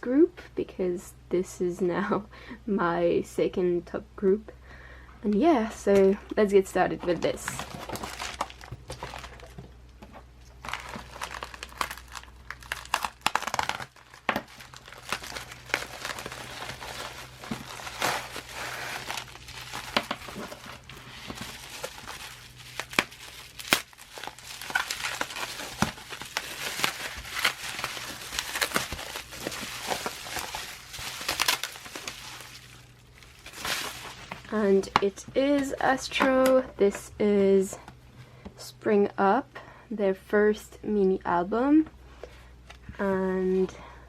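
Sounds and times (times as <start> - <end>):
packaging crinkling and tearing: 7.0 - 9.7, 10.4 - 35.6.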